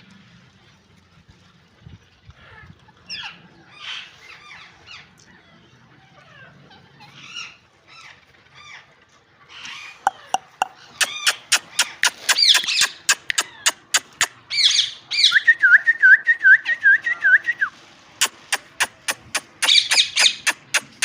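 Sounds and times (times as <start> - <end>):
parrot screechy chirps: 9.5 - 15.4, 18.2 - 21.0
sharp clicks: 10.1 - 14.4, 18.2 - 21.0.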